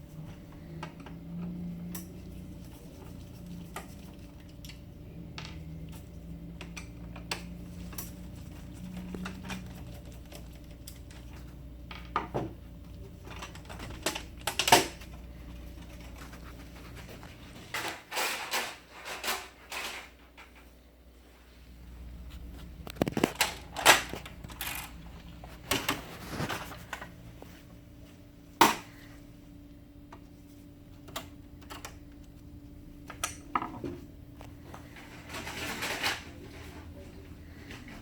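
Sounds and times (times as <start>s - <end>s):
low background hum: 0.0s - 38.0s
plastic parts clicking and clattering: 13.2s - 15.2s, 17.7s - 20.6s, 22.8s - 25.0s, 35.0s - 36.4s.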